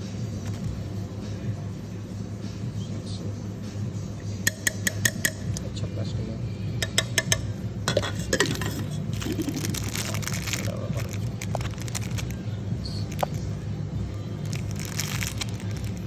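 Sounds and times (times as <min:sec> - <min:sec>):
utensils clinking and clattering: 0:04.5 - 0:05.7, 0:06.8 - 0:12.2
scraping and rattling: 0:07.9 - 0:12.3.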